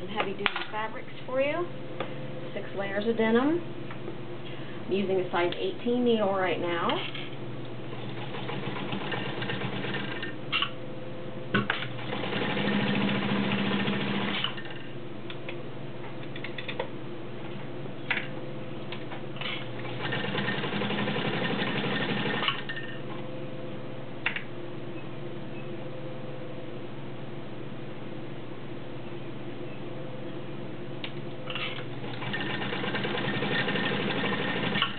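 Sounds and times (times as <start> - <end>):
sewing machine stitching: 8.0 - 10.3, 12.0 - 14.7, 19.4 - 22.8, 32.1 - 34.9.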